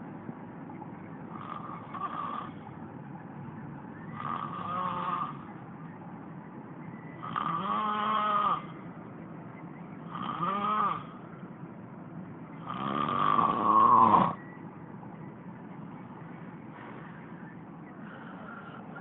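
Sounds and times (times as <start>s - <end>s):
turtle snoring: 1.3s - 2.7s, 4.1s - 5.5s, 7.2s - 8.8s, 10.0s - 11.2s, 12.6s - 14.4s.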